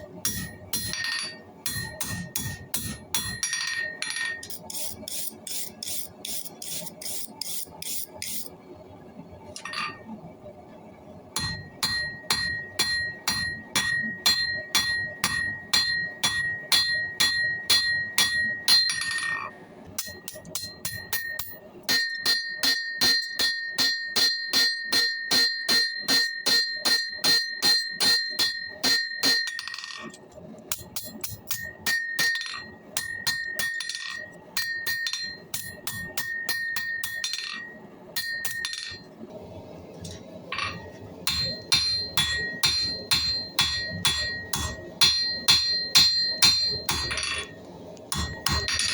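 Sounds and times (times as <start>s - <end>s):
hammer striking steel on anvil: 0.0s - 8.5s, 11.4s - 30.1s, 30.7s - 39.1s, 40.5s - 48.9s
bell-like anvil ring: 11.4s - 30.0s, 31.5s - 39.1s, 40.5s - 48.9s.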